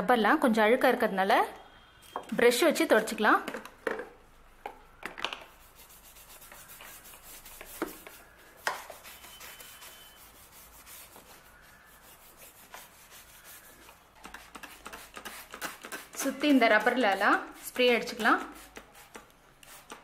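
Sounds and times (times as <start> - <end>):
brush scrubbing rubber: 5.4 - 20.0.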